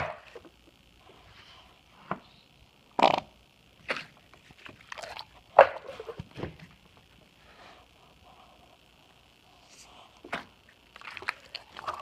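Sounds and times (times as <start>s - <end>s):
microphone hiss: 0.0s - 12.0s
slime squelching: 3.8s - 5.4s, 9.7s - 12.0s.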